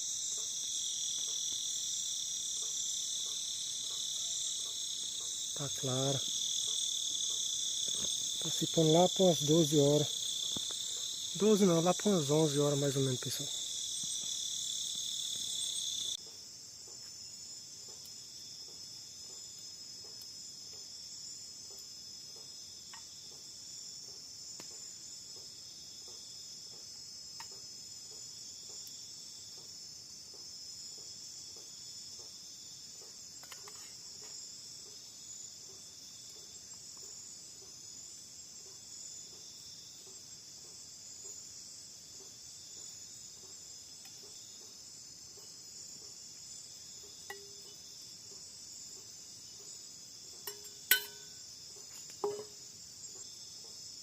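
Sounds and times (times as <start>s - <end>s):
crickets and insects trilling: 0.0s - 54.0s.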